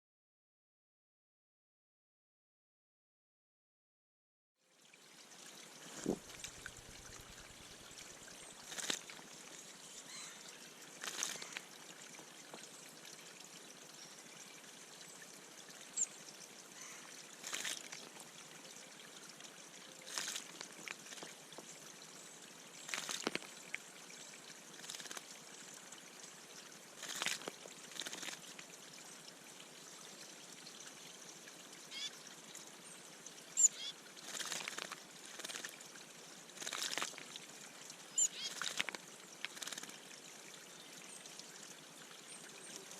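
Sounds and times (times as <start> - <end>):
water trickling: 4.6 - 42.9
birds splashing in water: 5.6 - 14.0, 15.7 - 18.2, 20.0 - 21.7, 22.8 - 23.8, 24.7 - 25.3, 26.9 - 28.6, 33.6 - 35.8, 36.5 - 37.5, 38.1 - 40.1
faint high bird chirps: 31.9 - 32.1, 33.6 - 33.9, 38.2 - 38.6.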